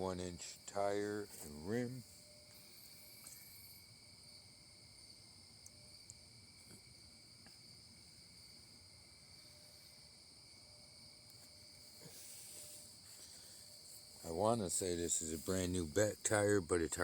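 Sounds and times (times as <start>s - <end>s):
crickets chirping: 0.0s - 17.0s
faint ticks: 3.1s - 3.6s, 5.6s - 7.6s.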